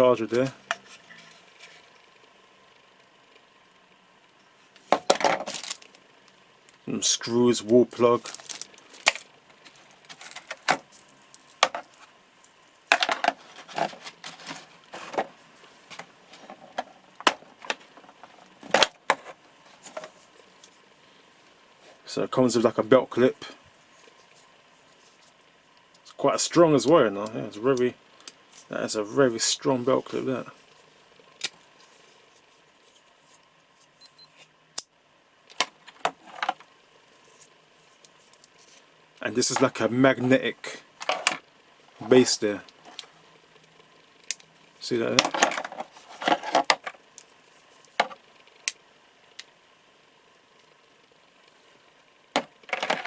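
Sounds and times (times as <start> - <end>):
packaging rustling: 5.2 - 6.0, 8.2 - 17.0.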